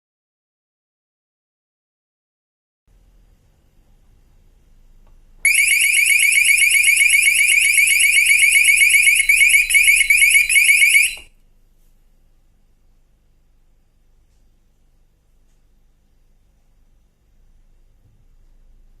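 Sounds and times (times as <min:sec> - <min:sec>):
door alarm siren rising sweeps: 0:05.5 - 0:11.3.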